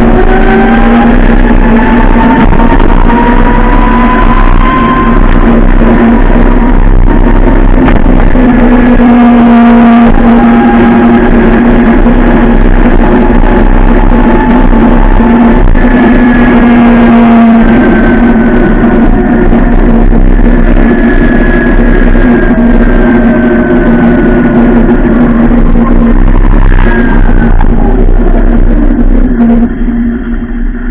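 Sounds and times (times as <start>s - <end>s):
electric motorcycle motor whine: 0.0s - 30.9s
wind rumble on microphone: 0.0s - 30.9s.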